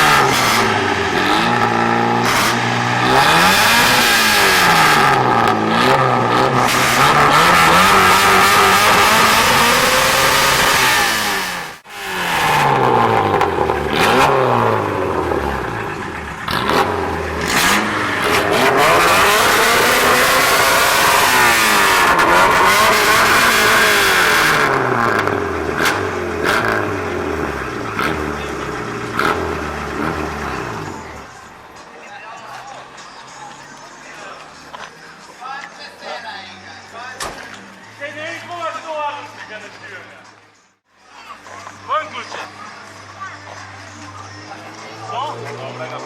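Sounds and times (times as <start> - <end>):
car engines revving: 0.0 - 34.9, 41.3 - 46.0.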